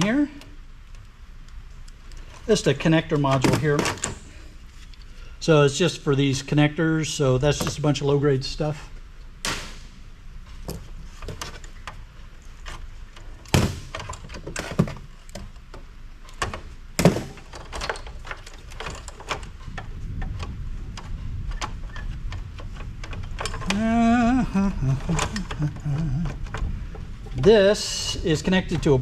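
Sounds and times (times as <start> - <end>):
clatter of parts and hand tools: 17.2 - 24.2, 24.8 - 27.5.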